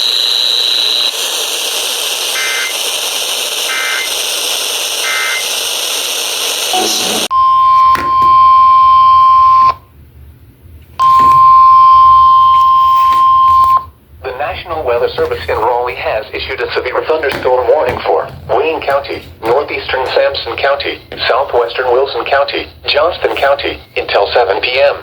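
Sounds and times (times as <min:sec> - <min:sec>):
steady alarm tone: 0:06.6 - 0:09.8
data burst tones: 0:06.7 - 0:07.7.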